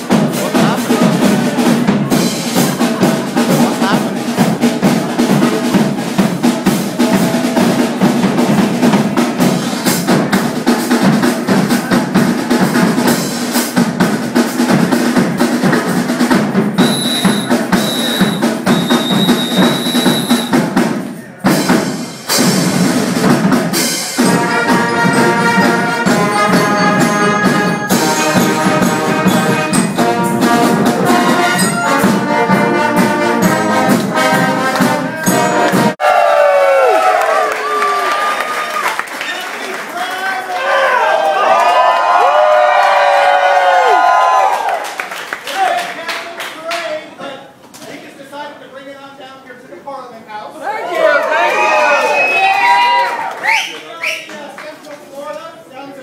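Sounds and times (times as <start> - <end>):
bass and snare drums: 0.0 - 36.0
marching band playing: 0.0 - 36.2
high piercing tones: 16.8 - 20.6.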